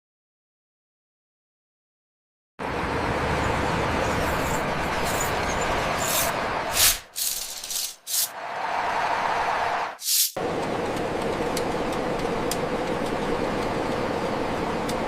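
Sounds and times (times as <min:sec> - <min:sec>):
bus engine rumbling: 0:02.6 - 0:15.0.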